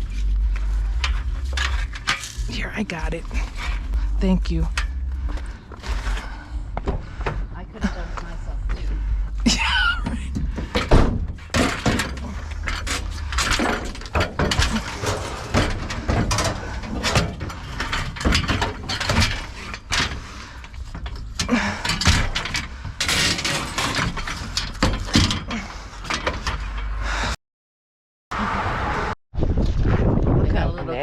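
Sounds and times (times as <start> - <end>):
scrap metal clanking: 0.1 - 2.7, 10.2 - 27.0.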